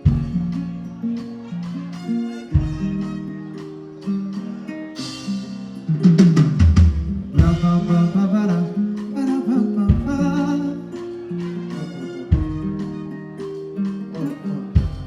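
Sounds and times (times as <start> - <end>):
live band music: 0.0 - 15.0
heavy bass hits: 0.1 - 0.8, 6.2 - 8.4, 12.4 - 12.9, 14.8 - 15.0.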